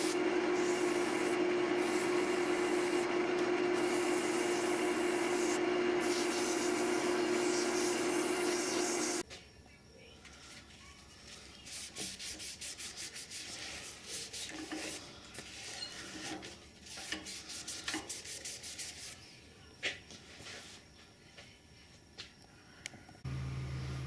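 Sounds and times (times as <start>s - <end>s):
sandpaper rubbing on wood: 3.8s - 9.2s, 11.6s - 16.2s, 16.8s - 19.2s.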